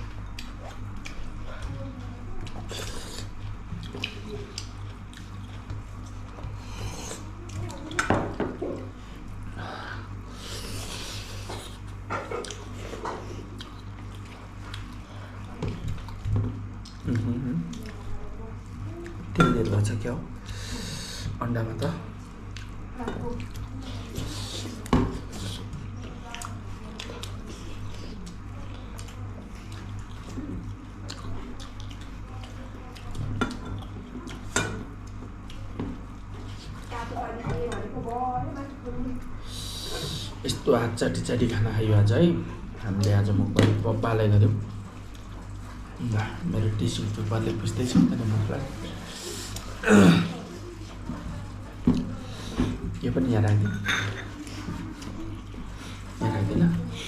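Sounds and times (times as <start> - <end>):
chewing and wet mouth noises: 0.0 - 8.0, 10.1 - 19.8, 22.0 - 37.1, 44.6 - 47.2, 48.7 - 53.1, 53.8 - 57.0
steady low hum: 0.0 - 57.0.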